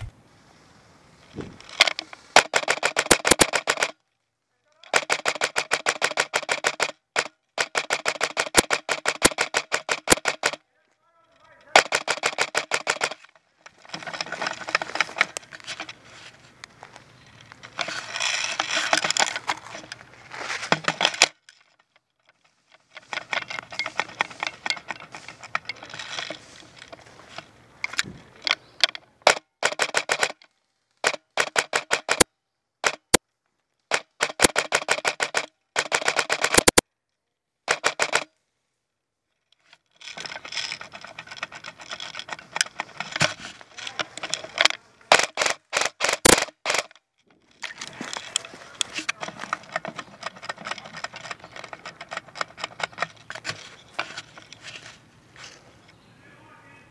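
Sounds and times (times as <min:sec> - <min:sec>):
airsoft guns firing bursts: 0:02.4 - 0:03.9, 0:04.9 - 0:10.6, 0:11.7 - 0:13.2, 0:29.3 - 0:30.3, 0:31.0 - 0:32.2, 0:33.9 - 0:36.8, 0:37.7 - 0:38.2.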